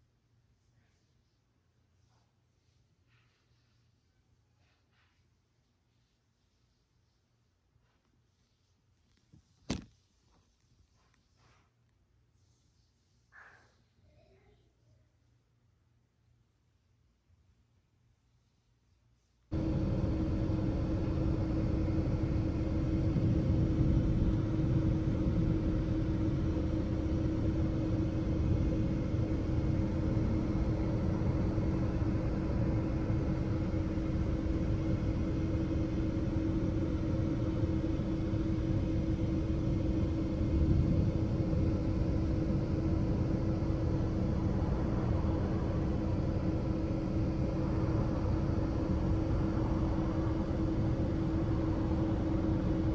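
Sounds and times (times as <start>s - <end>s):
machine drone with low hum: 19.5s - 52.9s.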